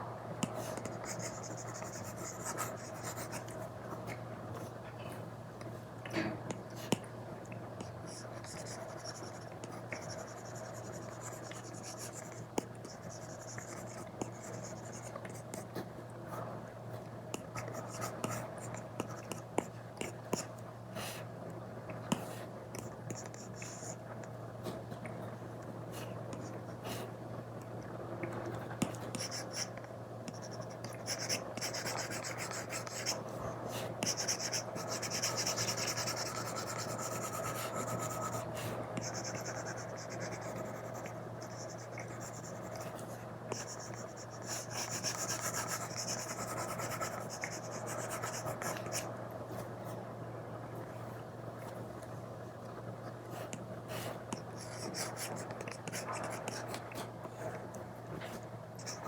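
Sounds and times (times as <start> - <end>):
steady low hum: 0.0 - 59.0
stylus scratching on a screen: 34.0 - 42.9, 43.6 - 49.0.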